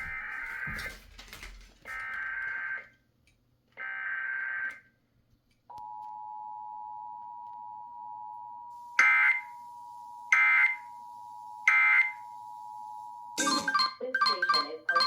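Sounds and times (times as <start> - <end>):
two-tone attention signal: 13.4 - 15.0.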